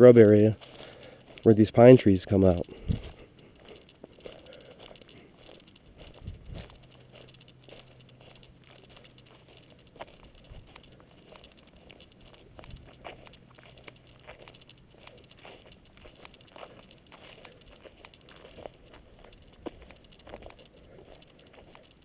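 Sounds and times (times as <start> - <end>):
footsteps crunching on trail: 0.0 - 22.0
faint low hum: 0.5 - 22.0.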